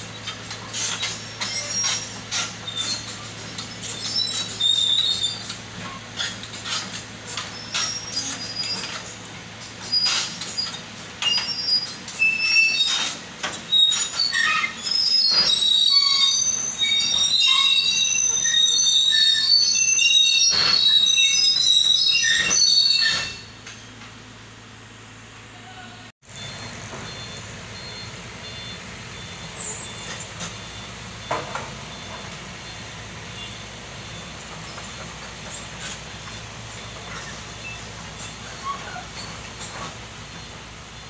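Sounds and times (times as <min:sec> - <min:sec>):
metal squeals: 0:00.0 - 0:24.1, 0:26.3 - 0:41.0
excavator engine drone: 0:14.9 - 0:41.0.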